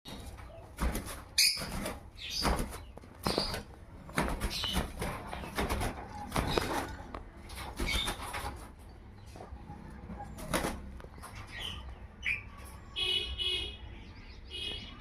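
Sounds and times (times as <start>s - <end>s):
cockatiels chirping: 1.4s - 3.6s.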